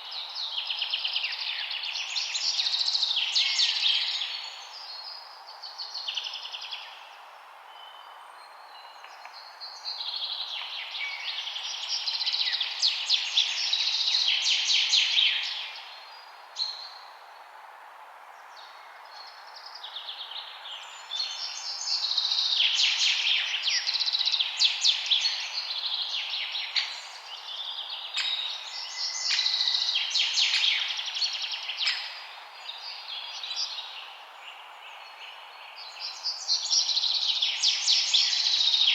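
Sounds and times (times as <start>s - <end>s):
songbirds chirping and trilling: 0.0s - 17.4s, 18.3s - 38.9s
steady background hiss: 0.0s - 38.9s.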